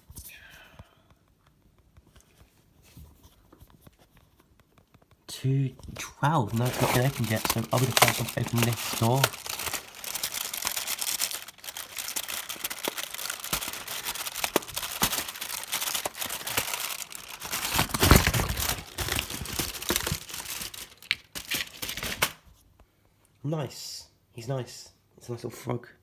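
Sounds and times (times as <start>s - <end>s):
paper crinkling and tearing: 5.9s - 22.4s.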